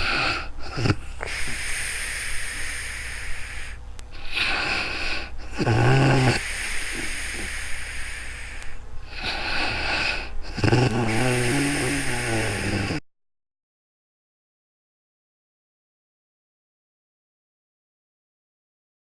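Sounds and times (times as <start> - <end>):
breathy hissing: 0.0 - 13.0
woman snoring: 0.0 - 13.0.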